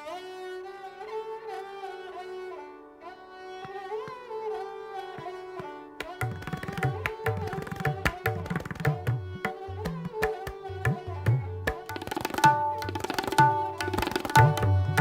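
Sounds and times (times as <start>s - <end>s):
sarangi sliding melody: 0.0s - 15.0s
tabla drumming: 6.0s - 15.0s.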